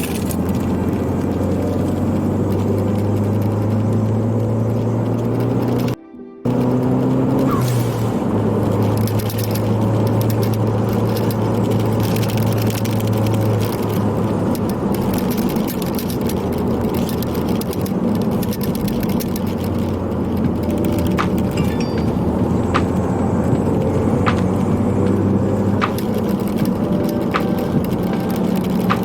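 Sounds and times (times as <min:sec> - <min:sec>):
car engine running: 0:00.0 - 0:29.0
camera strap clips rattling: 0:08.8 - 0:21.6.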